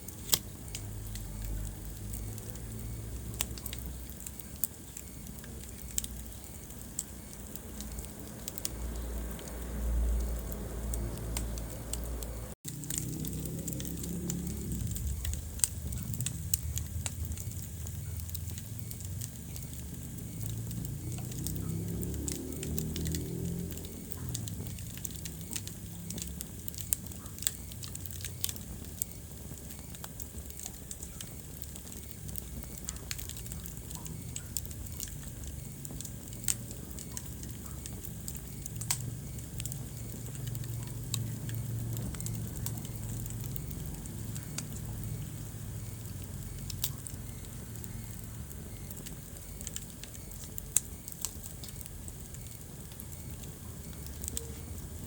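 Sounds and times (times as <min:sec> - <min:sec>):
wood fire crackling and popping: 0:00.0 - 0:55.0
low rumble: 0:07.4 - 0:26.4.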